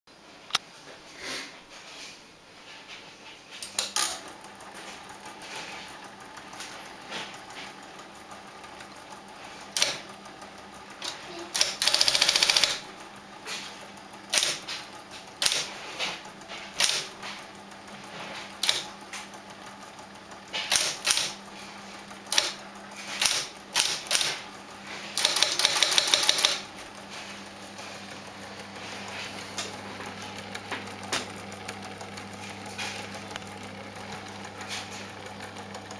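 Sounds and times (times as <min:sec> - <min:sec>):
typewriter motor hum: 0:03.6 - 0:35.9
typewriter keys clicking: 0:09.7 - 0:10.1, 0:11.0 - 0:12.9, 0:14.3 - 0:17.4, 0:18.5 - 0:19.3, 0:20.5 - 0:21.4, 0:22.3 - 0:26.7.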